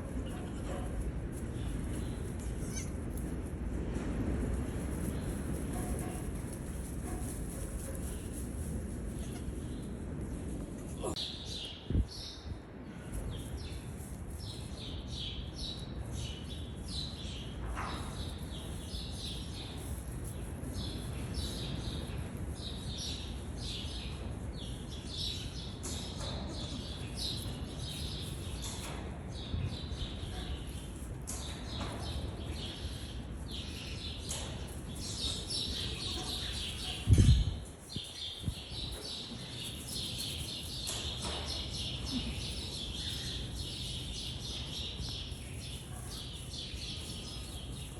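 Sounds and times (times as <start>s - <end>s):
small birds chirping: 13.3s - 47.9s.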